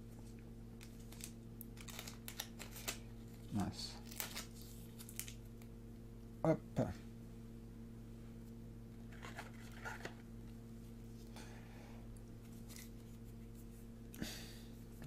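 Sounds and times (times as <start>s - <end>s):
low electrical hum: 0.0s - 15.0s
trading cards rustling: 0.8s - 5.4s.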